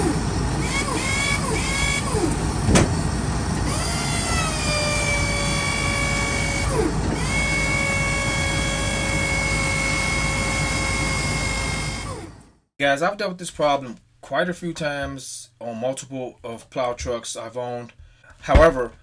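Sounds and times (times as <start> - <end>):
hydraulic pump motor whining: 0.0 - 12.6.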